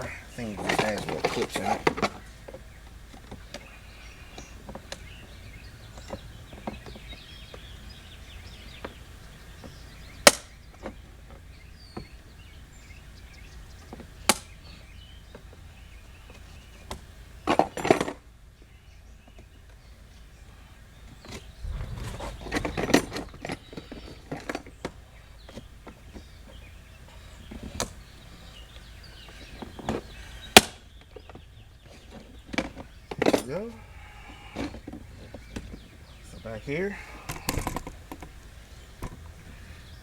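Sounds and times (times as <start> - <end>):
handling knocks: 21.6 - 25.0.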